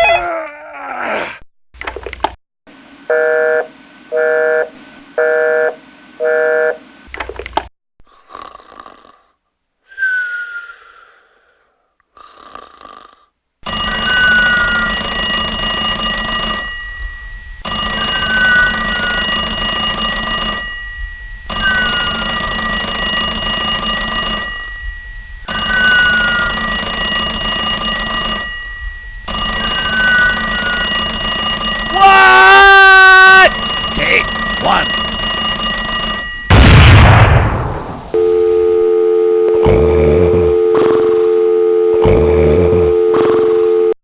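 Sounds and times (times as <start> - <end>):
person snoring with whistle: 8.1 - 13.3, 39.6 - 41.2, 42.0 - 43.5.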